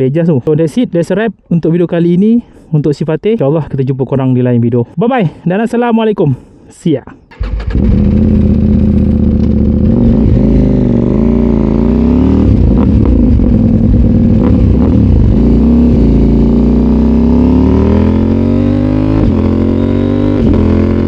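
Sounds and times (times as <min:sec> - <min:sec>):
motorcycle engine revving: 0:07.3 - 0:21.0.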